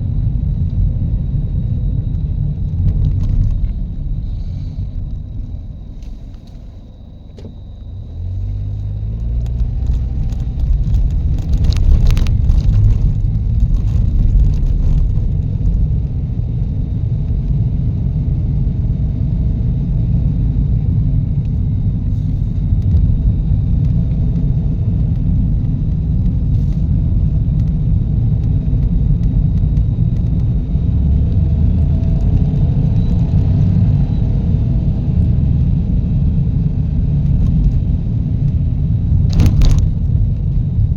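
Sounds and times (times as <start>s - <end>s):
car road and engine rumble: 0.0s - 40.9s.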